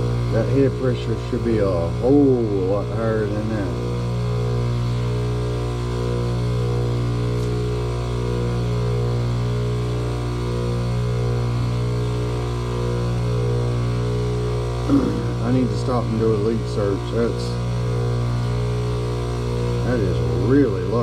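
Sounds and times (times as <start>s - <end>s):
condenser unit humming: 0.0s - 21.0s.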